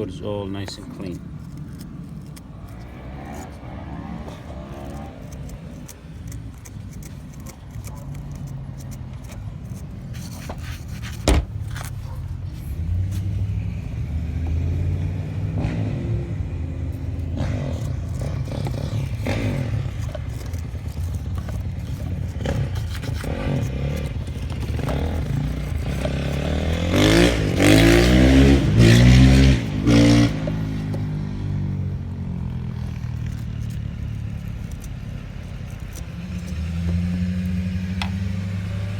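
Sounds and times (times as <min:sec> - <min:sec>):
engine hum: 0:00.0 - 0:38.9
brush scraping metal terminals: 0:00.4 - 0:13.9, 0:16.9 - 0:38.9
engine revving: 0:02.6 - 0:06.8, 0:12.1 - 0:38.9.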